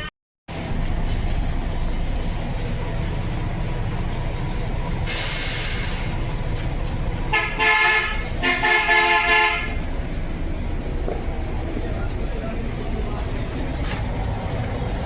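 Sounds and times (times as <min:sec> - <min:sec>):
running vehicle rumble: 0:00.0 - 0:15.0
vehicle horn honking: 0:07.3 - 0:09.8.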